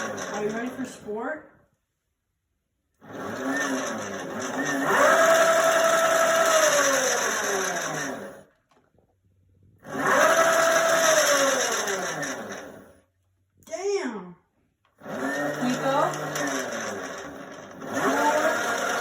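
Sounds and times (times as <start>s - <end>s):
electric motor whining: 3.0s - 8.4s, 9.9s - 12.9s, 15.0s - 19.0s.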